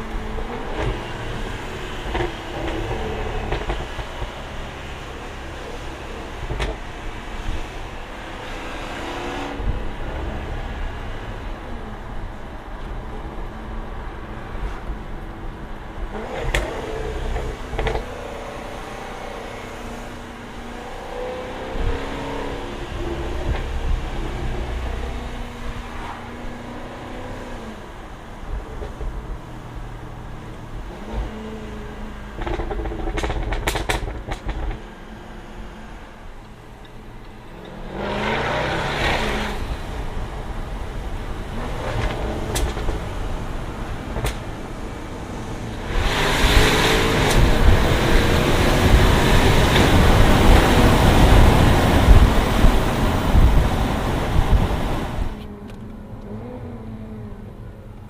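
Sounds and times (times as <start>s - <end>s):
exhaust pops and crackles: 2.0s - 4.4s, 6.4s - 6.9s, 16.4s - 16.7s, 17.3s - 18.1s, 32.4s - 34.9s, 39.0s - 55.9s
car engine revving hard: 37.6s - 55.4s.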